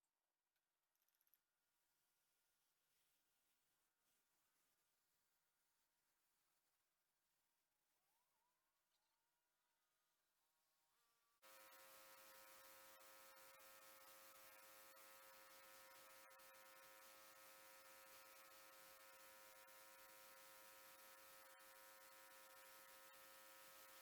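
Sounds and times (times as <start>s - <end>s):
faint steady hum: 11.4s - 24.0s.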